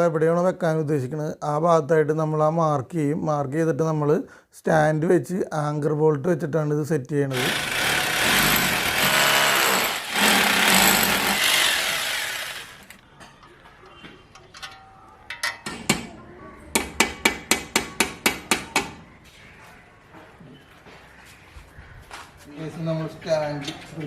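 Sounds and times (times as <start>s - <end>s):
hammer drill boring into masonry: 7.3s - 13.0s.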